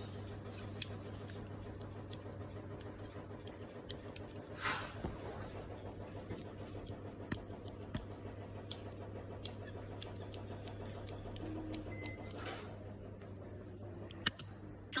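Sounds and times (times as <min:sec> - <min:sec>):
scissors snipping: 0:07.3 - 0:12.4.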